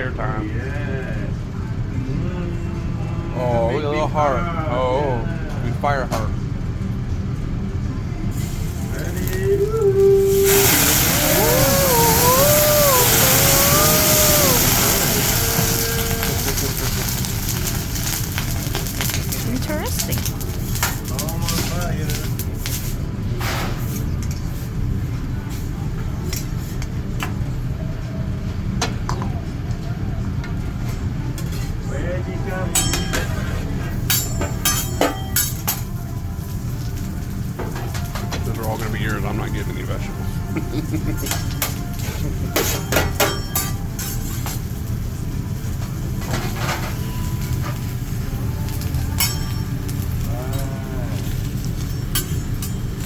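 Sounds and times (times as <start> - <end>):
restaurant background rumble: 0.0 - 53.0
metal utensils clinking on griddle: 13.0 - 22.9, 32.7 - 37.0, 40.7 - 44.8, 45.8 - 53.0
metal spatulas clacking on griddle: 34.1 - 35.9, 42.6 - 44.2, 49.2 - 50.0.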